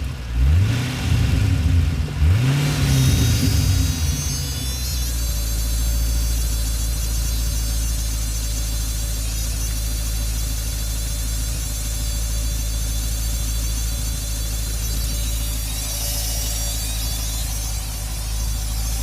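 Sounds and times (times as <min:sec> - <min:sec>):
car engine idling: 0:00.0 - 0:19.0
faint buzz: 0:11.2 - 0:19.0.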